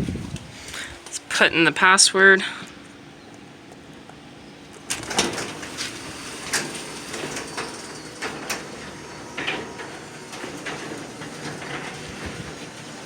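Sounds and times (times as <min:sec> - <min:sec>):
garage door opener running: 0:04.8 - 0:13.0.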